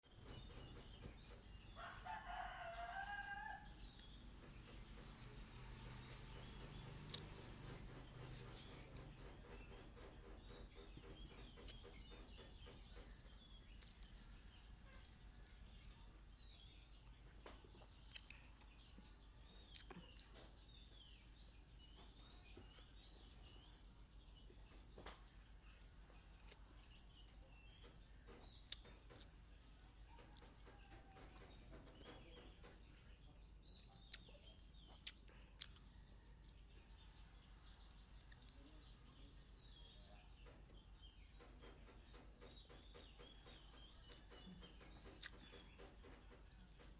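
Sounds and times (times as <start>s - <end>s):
faint bird chirps: 0.0s - 46.9s
high insect drone: 0.1s - 21.2s.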